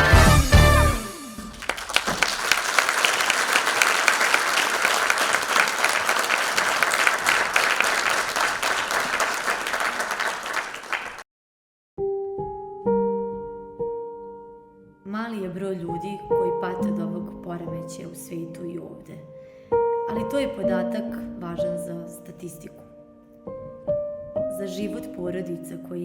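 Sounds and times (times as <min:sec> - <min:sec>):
audience applauding: 0:01.4 - 0:11.2.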